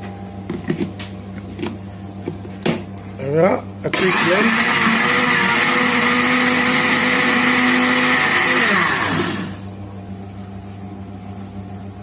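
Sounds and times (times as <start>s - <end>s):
electric blender running: 3.9s - 9.7s.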